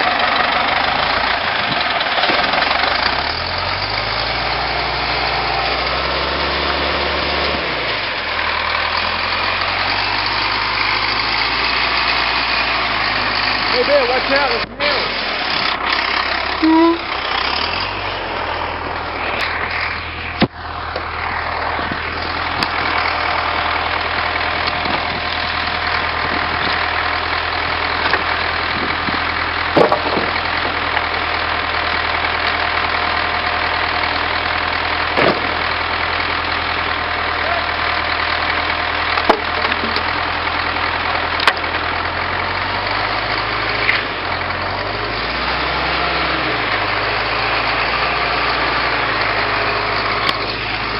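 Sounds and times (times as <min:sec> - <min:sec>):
tractor engine running: 0:00.0 - 0:50.9
sharp knocks: 0:35.2 - 0:35.6.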